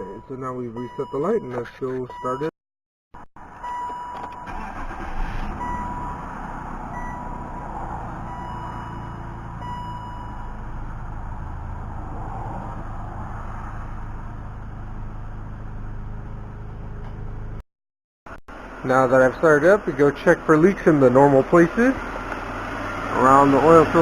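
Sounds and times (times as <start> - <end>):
car engine starting and idling: 3.4 - 12.3, 18.5 - 24.0
high single-pitch beep: 8.3 - 10.5.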